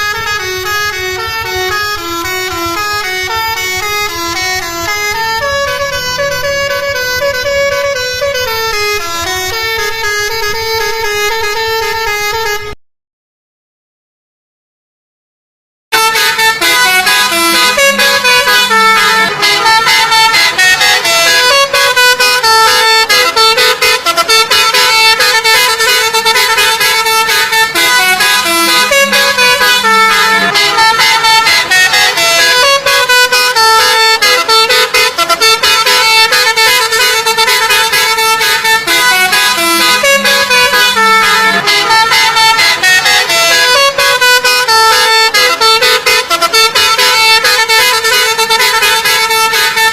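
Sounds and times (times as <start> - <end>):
bus horn playing a melody: 0.0 - 12.8, 15.9 - 49.9.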